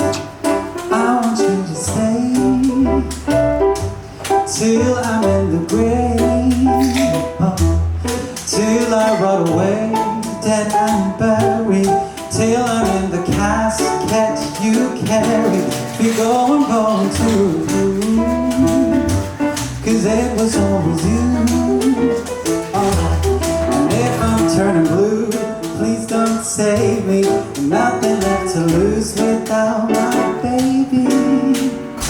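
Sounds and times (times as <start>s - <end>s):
live band playing instrumental: 14.6s - 25.8s.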